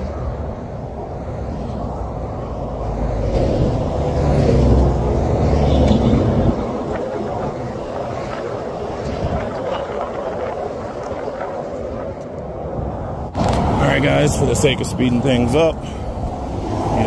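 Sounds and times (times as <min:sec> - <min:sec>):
vehicle passing close: 0:00.0 - 0:12.2
highway traffic rumble: 0:00.0 - 0:17.0.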